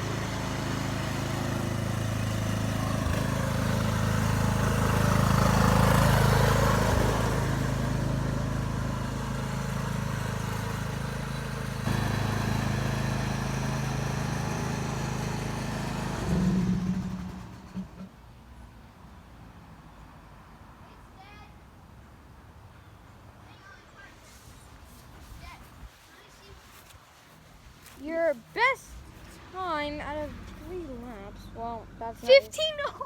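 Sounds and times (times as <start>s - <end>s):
lawn mower engine running: 0.0s - 18.2s.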